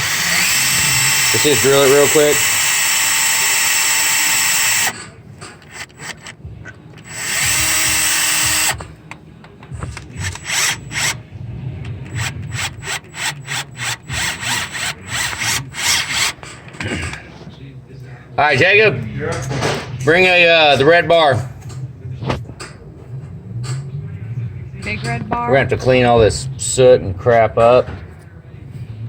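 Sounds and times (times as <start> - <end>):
cordless drill running: 0.0 - 5.0, 7.0 - 8.9, 10.3 - 11.2, 12.2 - 16.4.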